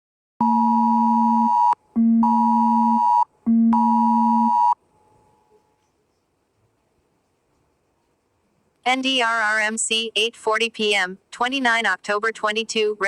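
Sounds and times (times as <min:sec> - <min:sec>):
phone emergency alert tone: 0:00.4 - 0:04.8.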